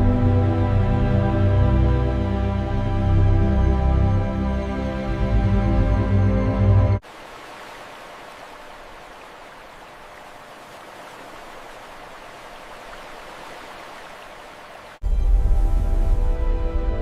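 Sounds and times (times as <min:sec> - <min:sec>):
background music: 0:00.0 - 0:07.0, 0:15.0 - 0:17.0.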